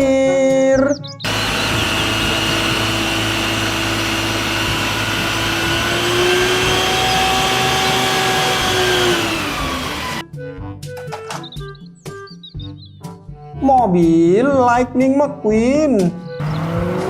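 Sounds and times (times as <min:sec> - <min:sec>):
background music: 0:00.0 - 0:17.0
toy truck engine whirring hum: 0:01.3 - 0:10.2, 0:16.4 - 0:17.0.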